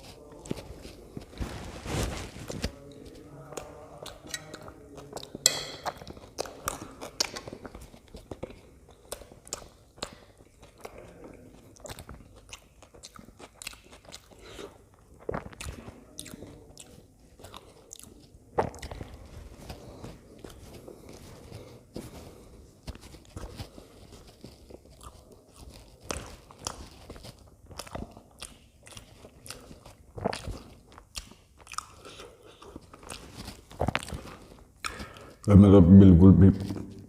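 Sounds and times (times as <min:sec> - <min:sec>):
biting food: 0:00.0 - 0:35.5
chewing food: 0:00.0 - 0:35.5
wet mouth clicks: 0:34.8 - 0:35.5.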